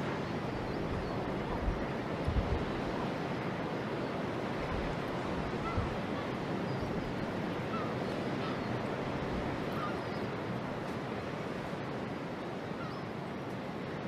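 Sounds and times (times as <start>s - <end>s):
wind on microphone: 0.0s - 7.8s
harbour water: 0.0s - 14.0s
faint bird calls: 5.5s - 8.8s, 9.6s - 10.4s, 12.6s - 13.2s.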